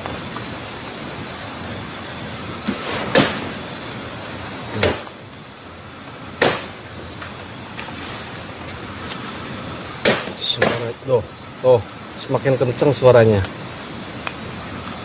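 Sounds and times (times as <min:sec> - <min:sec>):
night insects droning: 0:00.0 - 0:15.0
sharp knocks: 0:04.8 - 0:05.2, 0:06.4 - 0:06.8, 0:10.0 - 0:11.0.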